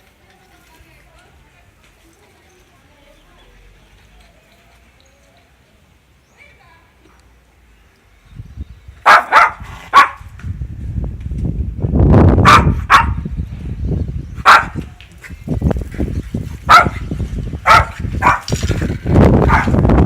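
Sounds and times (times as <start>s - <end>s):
wind rumble on microphone: 8.2s - 20.0s
dog barking: 9.0s - 10.3s, 12.4s - 13.2s, 14.4s - 14.8s, 16.7s - 17.0s, 17.6s - 18.5s, 19.4s - 19.8s.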